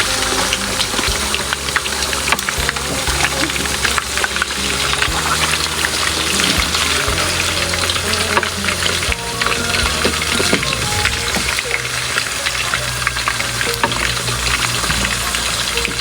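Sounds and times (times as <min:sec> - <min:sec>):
chicken frying in hot oil: 0:00.0 - 0:16.0.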